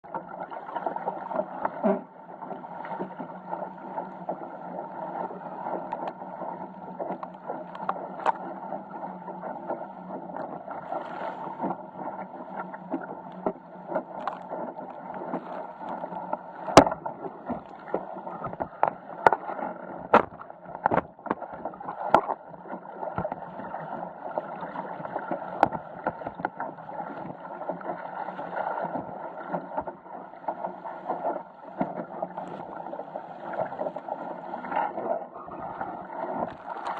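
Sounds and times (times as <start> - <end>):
water rushing along a hull: 0.0 - 36.9
water knocking and slapping: 7.0 - 8.6, 9.3 - 30.0, 30.6 - 32.8, 33.4 - 36.9.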